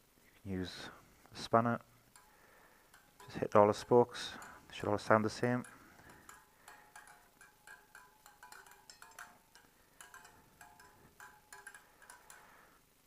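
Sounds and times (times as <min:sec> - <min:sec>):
spanner tapping wheel spokes: 0:02.1 - 0:12.7.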